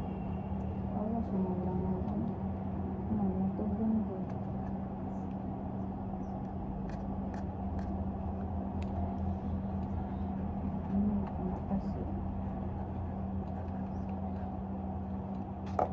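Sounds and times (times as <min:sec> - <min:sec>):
low machine hum: 0:00.0 - 0:15.9.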